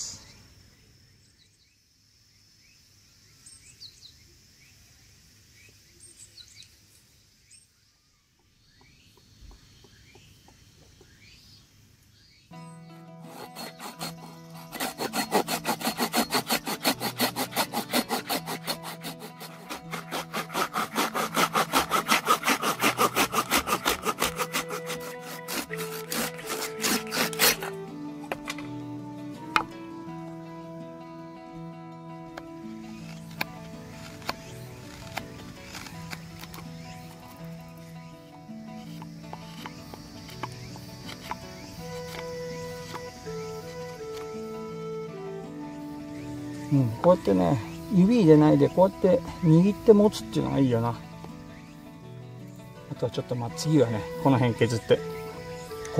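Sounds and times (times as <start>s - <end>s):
high insect tone: 0.0s - 20.1s, 21.5s - 55.9s
birds chirping: 0.0s - 55.9s
hand saw cutting wood: 12.9s - 28.7s, 32.9s - 37.5s, 38.7s - 45.0s.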